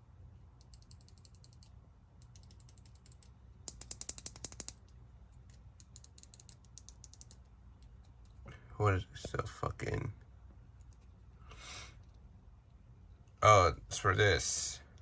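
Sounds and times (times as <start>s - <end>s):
quick ratchet-like clicks: 0.6s - 4.9s, 5.8s - 7.4s.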